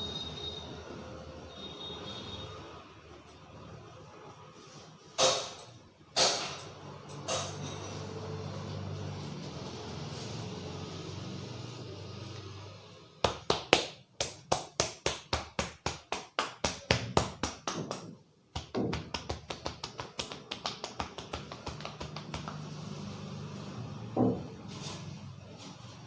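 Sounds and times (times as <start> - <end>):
hands slapping head: 13.2 - 22.7
light hand taps: 13.3 - 22.6.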